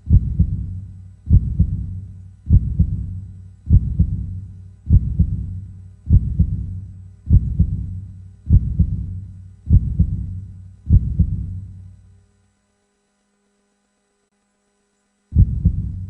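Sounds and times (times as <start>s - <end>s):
slow heartbeat thumps: 0.0s - 11.8s, 15.3s - 16.0s.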